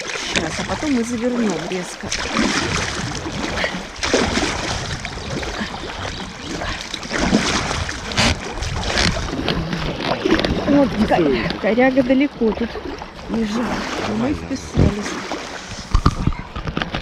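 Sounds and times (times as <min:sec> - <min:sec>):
sharp water splashes: 0:00.0 - 0:17.0
water rushing around boat: 0:00.0 - 0:17.0.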